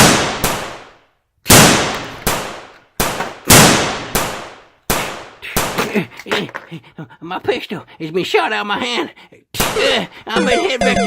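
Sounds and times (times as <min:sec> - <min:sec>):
gunshots: 0:00.0 - 0:06.0.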